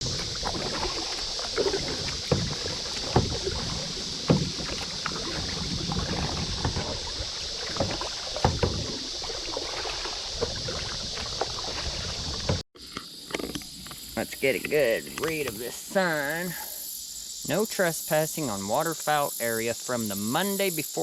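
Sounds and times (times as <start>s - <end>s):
paddle strokes and water splashes: 0.0s - 16.5s
steady high hiss: 12.8s - 21.0s.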